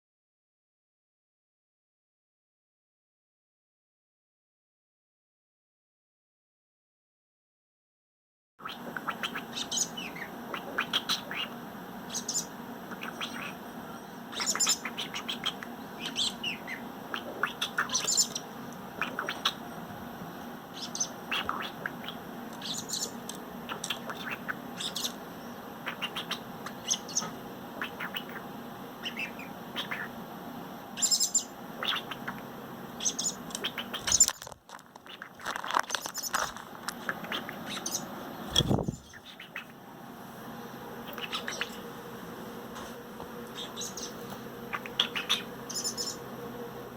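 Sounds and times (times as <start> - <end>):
robin chirping: 8.7 - 19.6, 20.7 - 30.2, 31.0 - 32.4, 33.0 - 34.4, 37.0 - 39.8, 41.1 - 41.9, 43.5 - 46.3
steady low hum: 8.7 - 34.4, 36.1 - 46.9.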